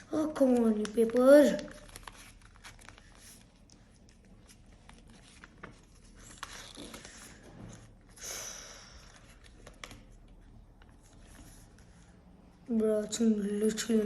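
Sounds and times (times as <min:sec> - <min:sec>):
paper rustling and crinkling: 0:00.2 - 0:08.1.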